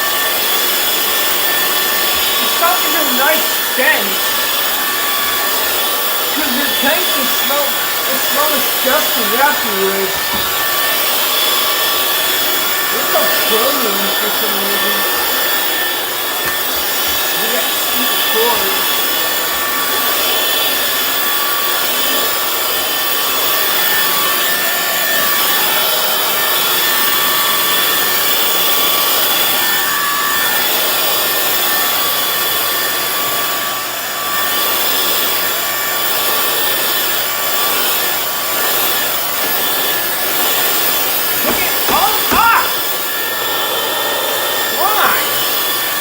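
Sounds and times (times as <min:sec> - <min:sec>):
brushes scrubbing hard floor: 0:00.0 - 0:24.7, 0:34.2 - 0:46.0
floor cleaner motor drone: 0:00.0 - 0:46.0.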